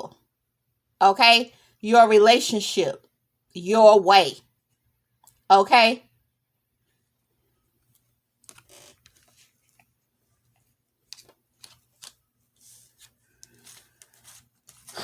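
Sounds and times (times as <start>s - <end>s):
soft rustles: 7.8s - 15.0s.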